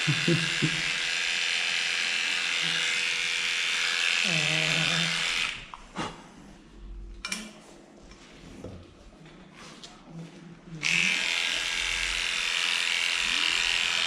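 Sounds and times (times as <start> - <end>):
electric clippers buzzing: 0.0 - 5.7, 10.8 - 14.0.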